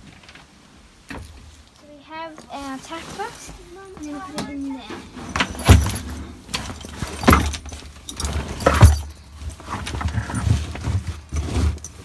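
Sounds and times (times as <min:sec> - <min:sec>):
rattling and clicks: 0:03.0 - 0:12.0
box thudding into cupboard: 0:05.2 - 0:11.8.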